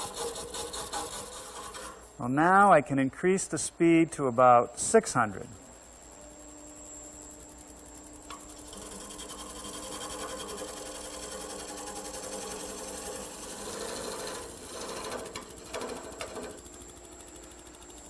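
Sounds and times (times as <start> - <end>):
wood lathe chisel cutting: 8.6 - 16.6.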